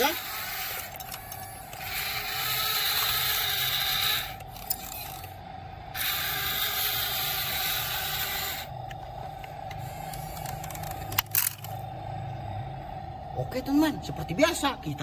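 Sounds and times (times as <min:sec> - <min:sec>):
toy gear motors whirring: 0:00.0 - 0:11.8
steady hum: 0:00.0 - 0:15.0.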